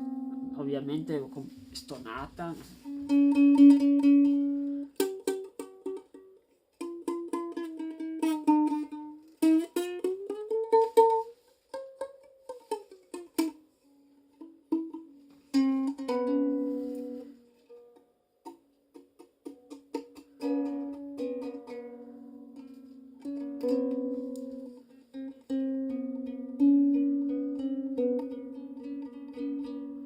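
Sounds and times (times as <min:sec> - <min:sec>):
ukulele string pitch sliding: 0:00.0 - 0:06.2, 0:18.9 - 0:30.0
strummed ukulele chord: 0:00.0 - 0:13.6, 0:14.4 - 0:30.0
ukulele strings plucked: 0:00.0 - 0:30.0.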